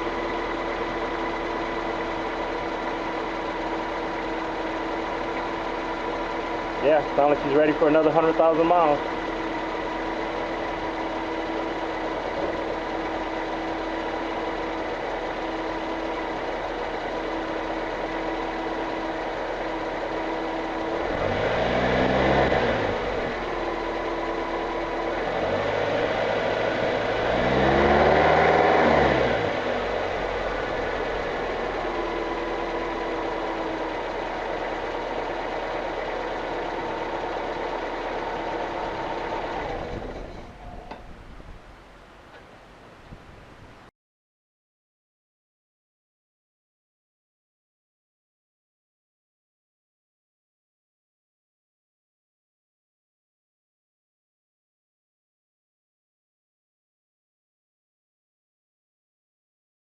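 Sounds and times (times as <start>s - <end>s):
car engine idling and revving: 0.0s - 43.0s.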